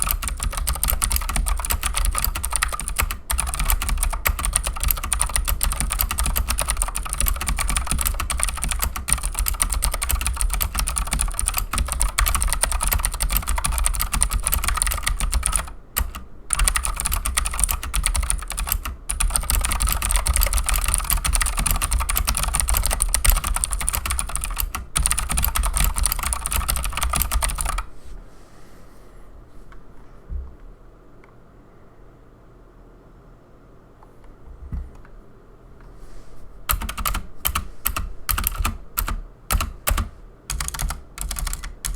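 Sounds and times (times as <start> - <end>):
fast mechanical keyboard typing: 0.0 - 27.9, 36.7 - 41.9.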